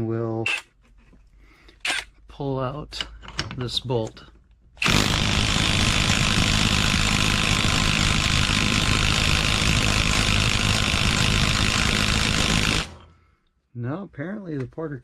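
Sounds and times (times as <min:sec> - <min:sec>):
impact wrench hammering: 0:04.8 - 0:13.2.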